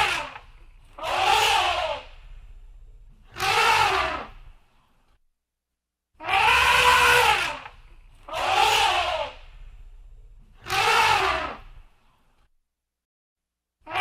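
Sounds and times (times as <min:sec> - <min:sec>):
elephant trumpeting: 0:00.0 - 0:04.5, 0:06.2 - 0:11.7.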